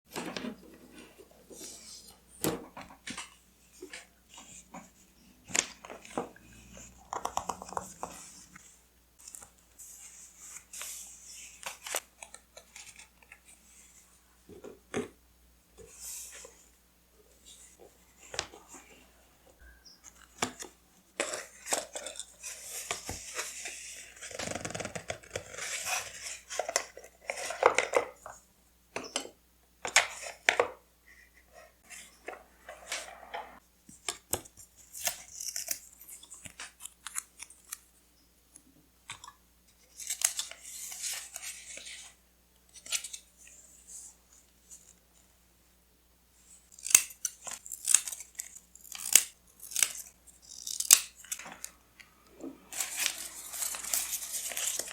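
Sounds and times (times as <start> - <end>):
scissors snipping: 46.7 - 51.4
paper and tape rustling: 52.7 - 54.9.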